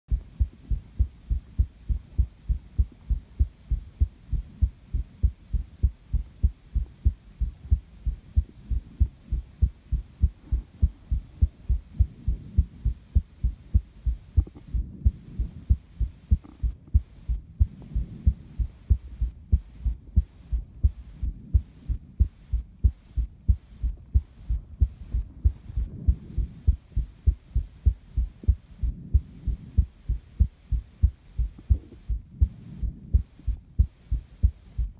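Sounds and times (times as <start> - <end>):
heartbeat thumps: 0.1 - 34.9.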